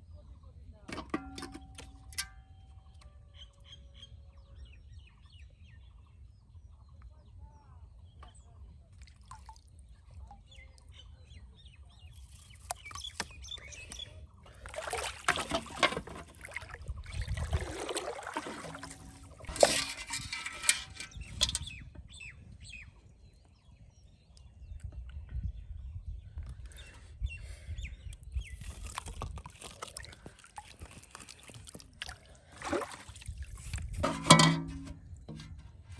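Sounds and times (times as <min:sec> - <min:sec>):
water splashing and sloshing: 0:12.2 - 0:21.6, 0:28.6 - 0:35.9.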